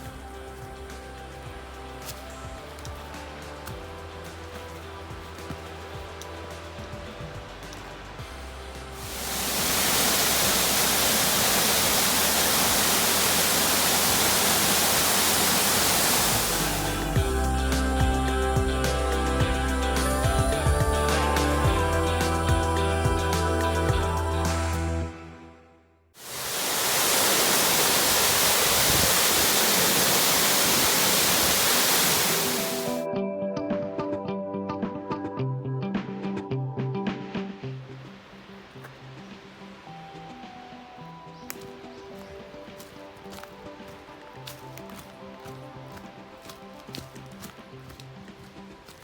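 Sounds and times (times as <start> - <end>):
waterfall rushing: 9.0 - 17.2, 26.2 - 33.0.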